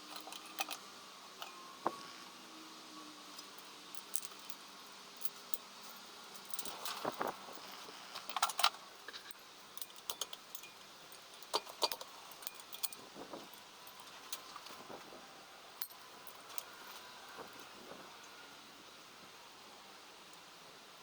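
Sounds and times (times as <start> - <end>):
metal tools clinking and rattling: 0.0 - 0.8, 1.4 - 1.7, 3.4 - 14.8.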